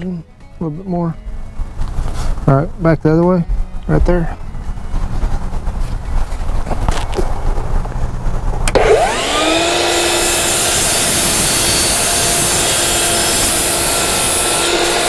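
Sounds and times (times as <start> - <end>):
table saw cutting wood: 8.7 - 15.0.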